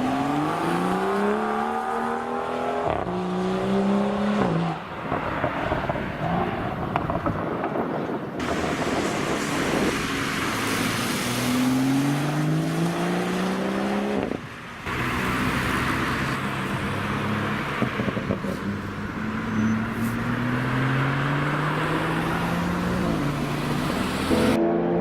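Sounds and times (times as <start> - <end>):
car engine accelerating hard: 8.4 - 25.0.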